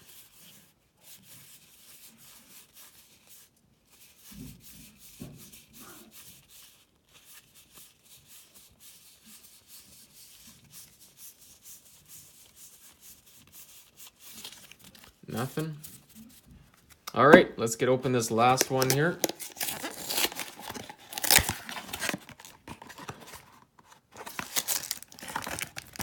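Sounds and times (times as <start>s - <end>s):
cards sliding against each other: 18.3s - 25.6s.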